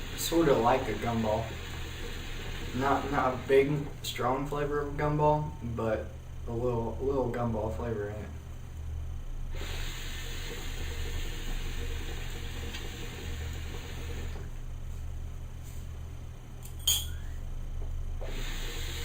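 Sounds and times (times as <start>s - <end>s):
hookah water bubbling: 0.0s - 4.2s, 9.5s - 14.8s, 18.2s - 19.0s.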